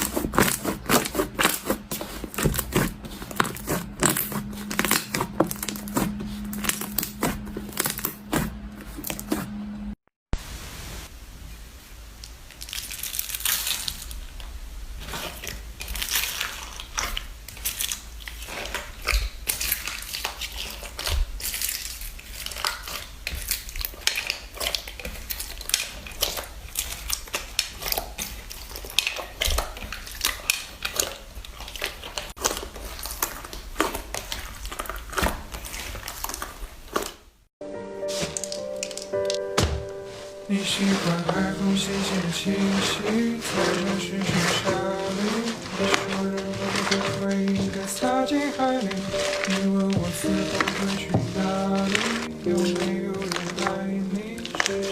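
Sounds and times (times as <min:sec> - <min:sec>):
slime crackling and popping: 0:00.0 - 0:08.5, 0:12.2 - 0:37.5, 0:38.1 - 0:39.7, 0:40.4 - 0:54.9.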